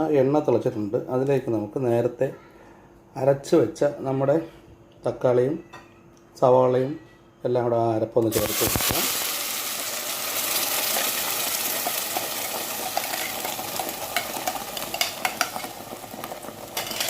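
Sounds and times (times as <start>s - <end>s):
paste sizzling in hot oil: 8.3s - 17.0s.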